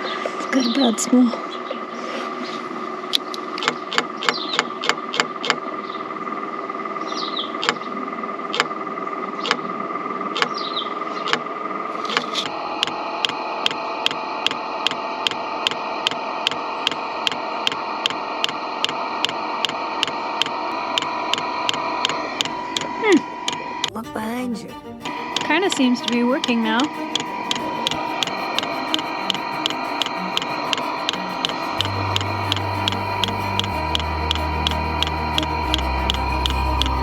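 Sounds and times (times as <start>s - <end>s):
heater blower humming: 11.5s - 37.0s
fuel pump ticking: 25.0s - 37.0s.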